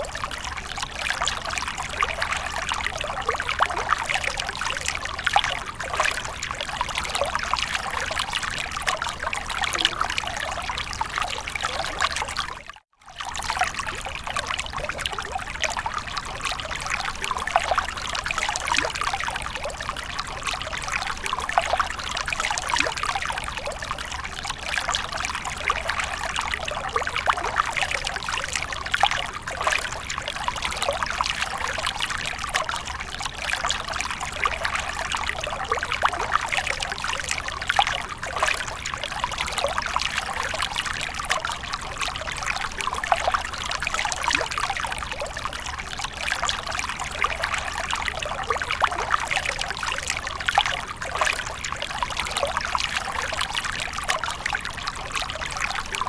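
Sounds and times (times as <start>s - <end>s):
water splashing and trickling: 0.0s - 56.0s.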